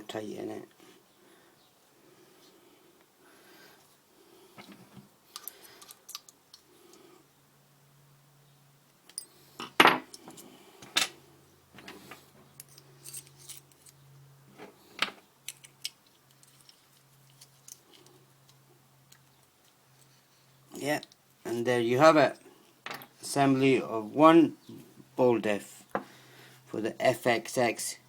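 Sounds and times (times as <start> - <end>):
small metal parts clinking: 5.3 - 6.6, 9.1 - 11.2, 11.8 - 14.0, 15.0 - 20.1.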